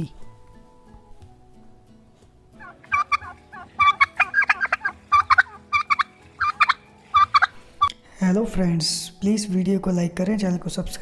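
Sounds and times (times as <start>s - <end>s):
turkey gobbling: 2.6s - 7.9s.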